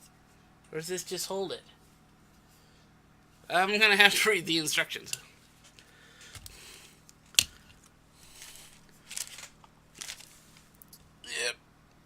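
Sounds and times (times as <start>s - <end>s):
soft rustling: 8.2s - 10.8s.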